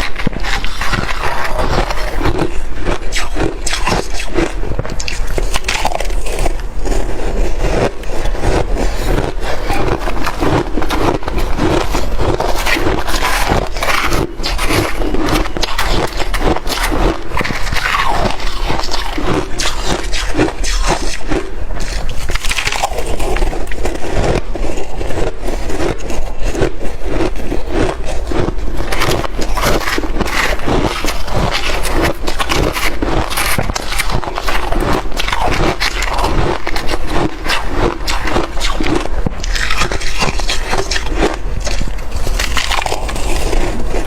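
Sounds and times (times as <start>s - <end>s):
frost crunching as chewed: 0.0s - 44.0s.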